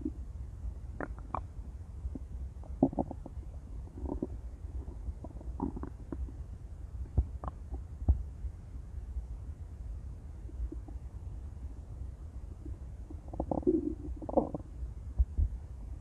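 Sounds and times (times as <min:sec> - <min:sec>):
stomach growling and gurgling: 0:01.0 - 0:06.4, 0:07.0 - 0:08.2, 0:10.5 - 0:11.1, 0:12.6 - 0:15.5.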